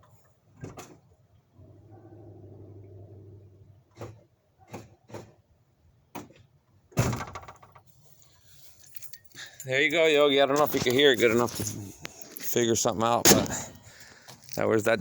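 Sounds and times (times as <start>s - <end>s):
loud thunk: 7.0s - 7.6s, 13.2s - 13.8s.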